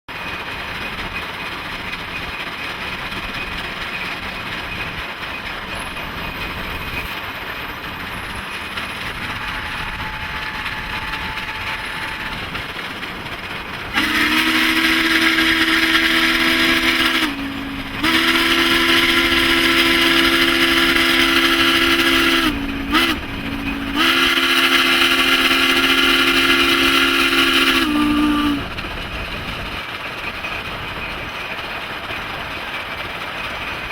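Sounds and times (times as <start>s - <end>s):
train running noise: 0.1s - 33.9s
steam whistle blasts: 9.1s - 12.7s, 13.9s - 28.8s.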